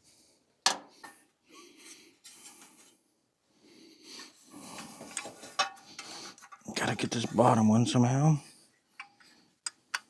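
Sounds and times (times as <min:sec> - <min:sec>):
person breathing with strain: 0:03.6 - 0:06.5.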